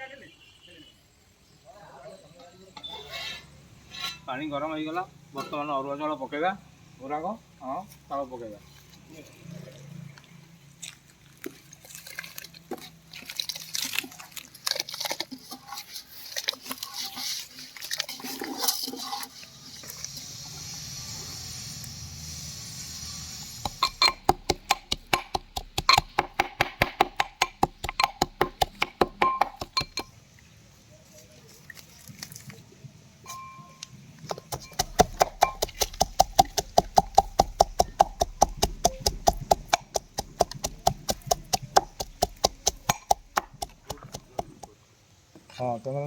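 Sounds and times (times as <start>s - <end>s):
rapid metallic clinking: 23.7s - 30.1s.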